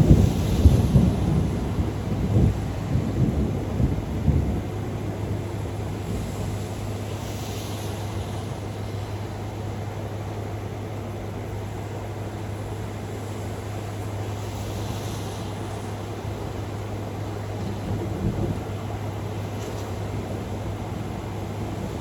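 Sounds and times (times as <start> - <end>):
rain and wind hiss: 0.0 - 22.0.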